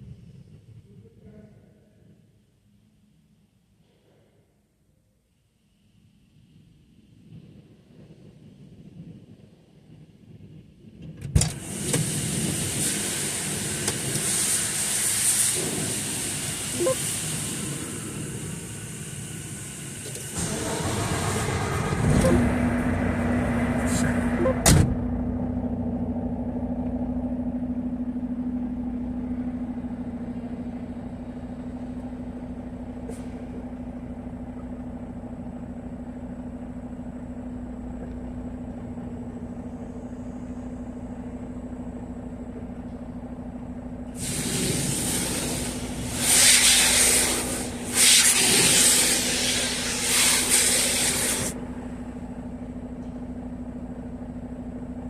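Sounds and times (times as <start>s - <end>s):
low hum: 5.6s - 46.4s, 49.0s - 55.0s
pressure washer spray hissing: 11.6s - 22.4s, 44.2s - 51.6s.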